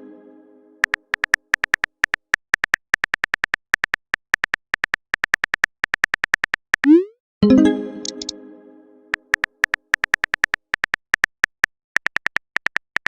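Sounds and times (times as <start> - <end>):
electronic typing blips: 6.8 - 8.3
held synthesizer chord: 7.4 - 9.1.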